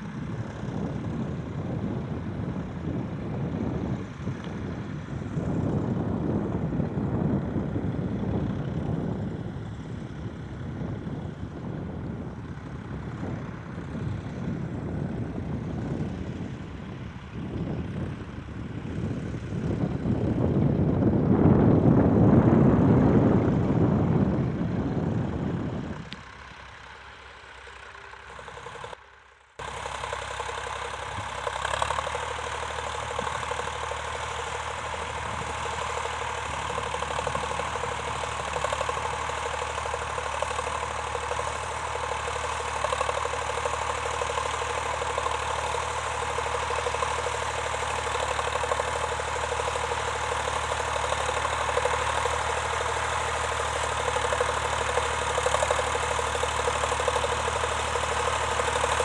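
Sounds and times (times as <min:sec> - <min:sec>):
tractor engine knocking: 0:00.0 - 0:59.0.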